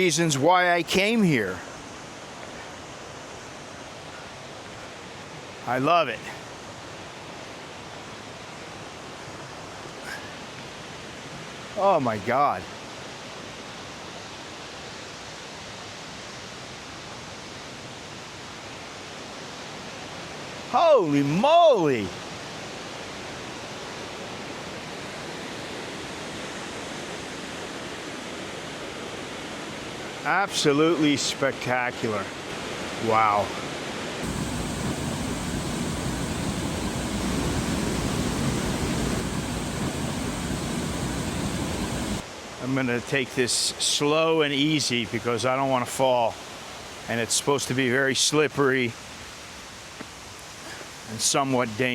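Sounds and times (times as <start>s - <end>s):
waterfall rushing: 30.2s - 42.5s.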